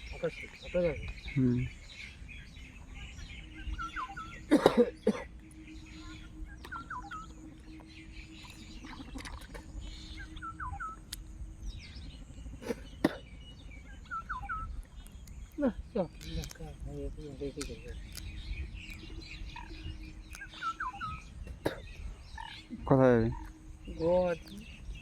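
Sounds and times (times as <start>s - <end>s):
rural background hum: 0.0s - 25.0s
bird three-note call: 2.9s - 7.8s, 18.9s - 24.6s.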